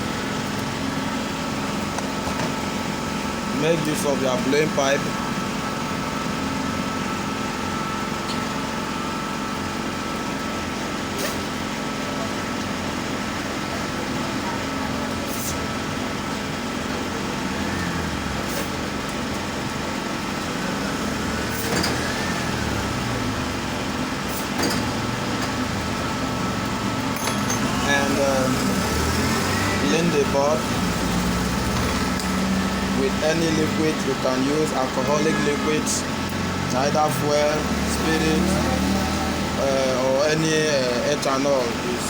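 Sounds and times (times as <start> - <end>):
hot air blower humming: 20.0 - 42.0.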